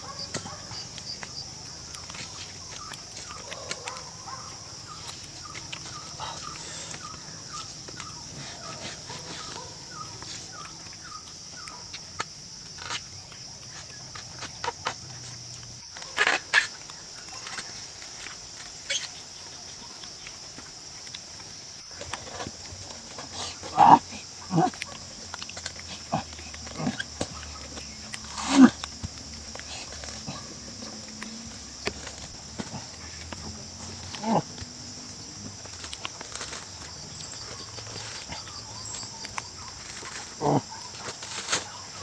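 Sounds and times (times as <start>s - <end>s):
bird chirping: 0.0s - 21.1s, 36.4s - 41.1s.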